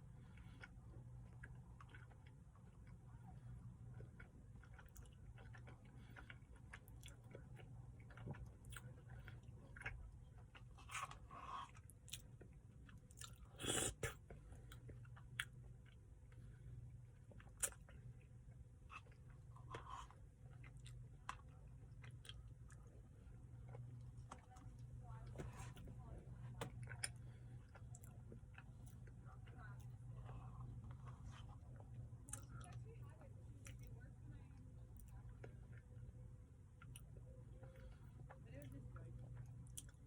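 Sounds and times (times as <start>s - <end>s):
person chewing and biting: 4.2s - 16.0s.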